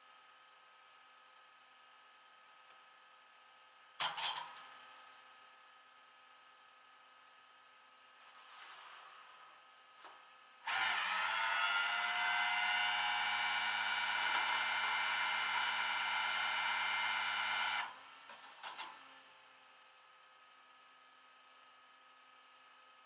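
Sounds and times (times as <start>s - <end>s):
loading machinery whine: 10.6s - 19.0s.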